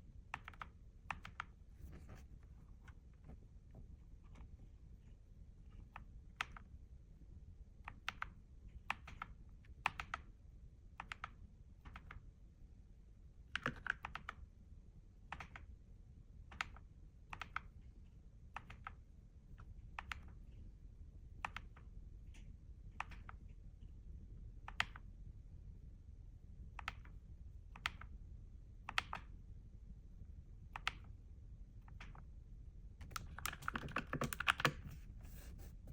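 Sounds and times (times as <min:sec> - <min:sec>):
mechanical keyboard key clicks: 0:33.0 - 0:35.0.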